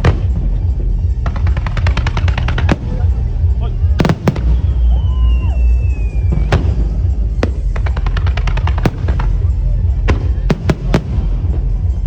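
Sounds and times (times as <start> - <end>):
firework crackling reports: 0.0 - 12.0
low rumble: 0.0 - 12.0
firework whistle: 4.0 - 7.6
firework burst: 4.0 - 11.8.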